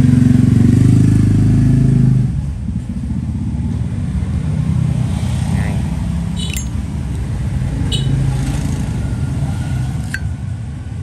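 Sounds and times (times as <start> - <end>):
traffic rumble: 2.2 - 11.0
sharp metallic clicks: 6.4 - 7.3, 7.9 - 8.2, 10.0 - 10.3.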